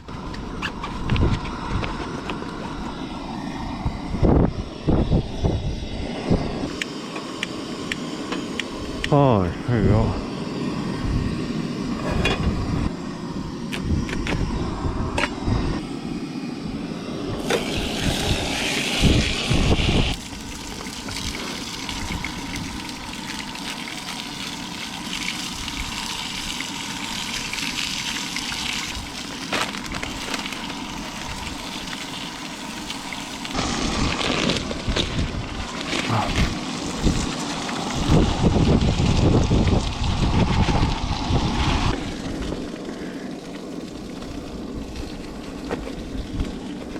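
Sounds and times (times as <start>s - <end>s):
wind buffeting microphone: 3.5s - 6.8s, 17.2s - 21.3s, 33.6s - 42.7s
water hissing in pot: 15.8s - 46.9s.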